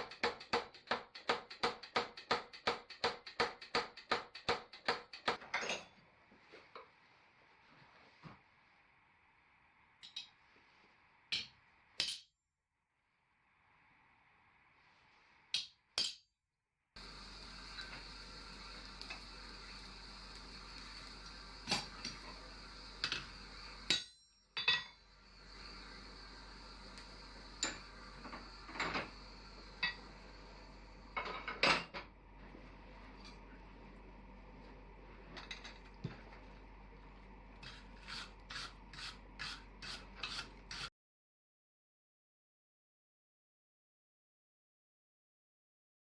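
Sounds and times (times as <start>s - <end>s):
steady hum with high whine: 17.0s - 24.0s, 25.0s - 38.7s.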